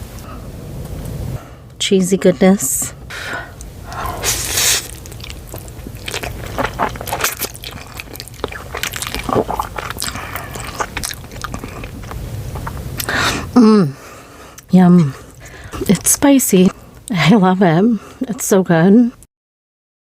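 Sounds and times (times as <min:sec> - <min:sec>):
wet chewing with smacking: 0:03.6 - 0:13.4.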